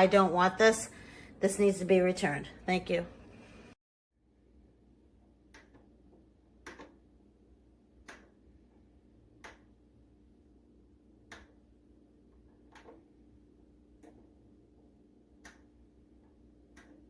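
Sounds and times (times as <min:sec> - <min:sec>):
oven dial clicks: 0:08.0 - 0:08.4, 0:09.4 - 0:09.8, 0:11.2 - 0:11.7, 0:15.4 - 0:15.8, 0:16.7 - 0:17.0.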